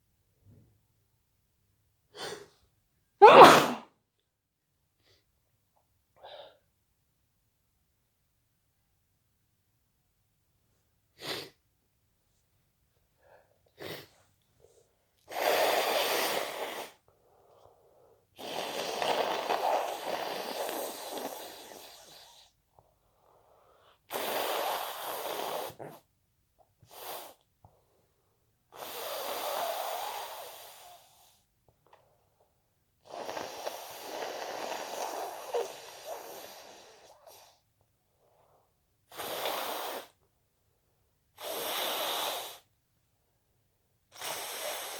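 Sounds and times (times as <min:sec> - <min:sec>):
person sneezing: 0:03.2 - 0:03.9.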